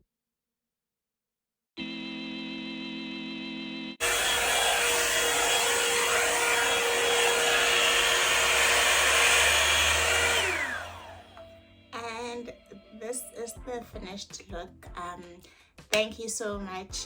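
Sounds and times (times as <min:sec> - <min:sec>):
hair dryer brush blowing: 0:04.0 - 0:11.5.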